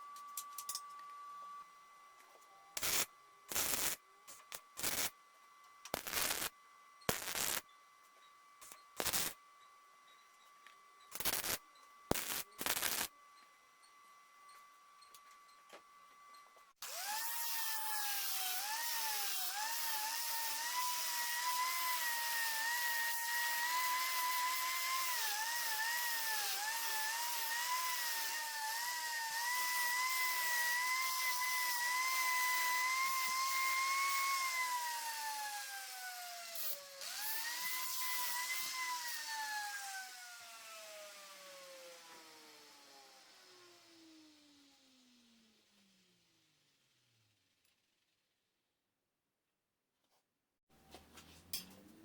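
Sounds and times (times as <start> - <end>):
power tool motor whining: 6.0 - 6.5, 7.1 - 7.6, 11.1 - 13.1, 16.8 - 46.0.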